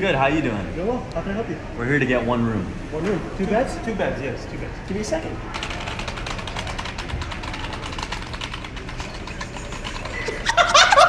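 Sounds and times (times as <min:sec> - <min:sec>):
keyboard typing clicks: 0:05.6 - 0:10.6.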